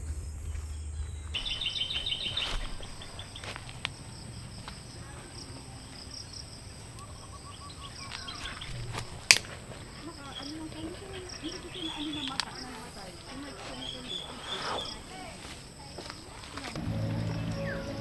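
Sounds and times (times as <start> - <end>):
bird chirps: 0.7 - 15.6, 16.7 - 18.0
high-pitched insect drone: 16.8 - 18.0.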